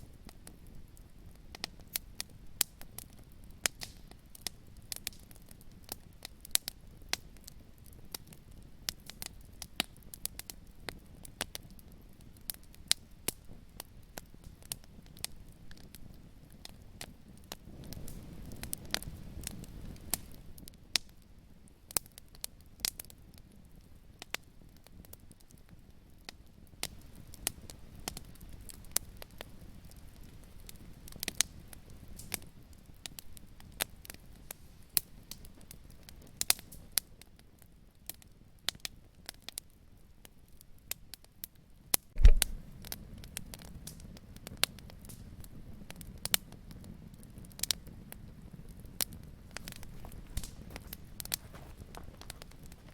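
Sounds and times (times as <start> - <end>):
wood fire crackling: 0.1 - 21.2, 42.2 - 52.9
low rumble of flames: 0.1 - 23.8, 42.2 - 52.9.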